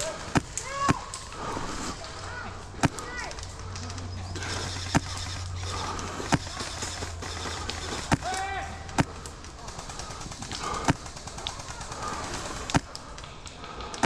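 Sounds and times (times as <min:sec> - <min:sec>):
distant players shouting: 0:00.0 - 0:13.8
airsoft gun shots: 0:04.4 - 0:09.2.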